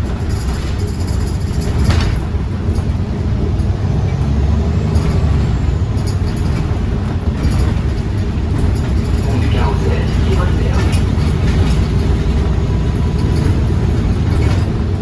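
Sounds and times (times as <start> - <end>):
bus engine rumble: 0.0 - 15.0.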